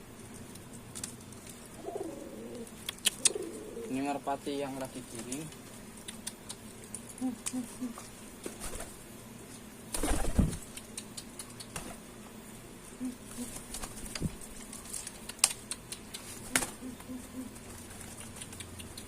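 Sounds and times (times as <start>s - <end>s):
pigeon cooing: 1.7s - 4.2s, 16.4s - 19.0s
wing flapping: 8.4s - 9.0s, 9.9s - 12.1s, 13.2s - 19.0s.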